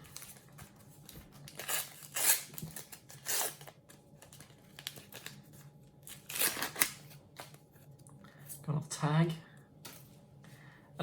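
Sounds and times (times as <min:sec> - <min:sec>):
wrapper tearing and crinkling: 0:01.4 - 0:03.8, 0:06.1 - 0:07.2.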